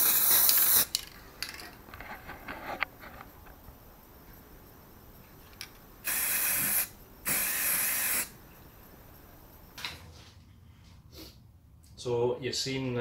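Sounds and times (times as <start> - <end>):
aerosol spray paint bursts: 0.0 - 1.0, 6.0 - 8.4.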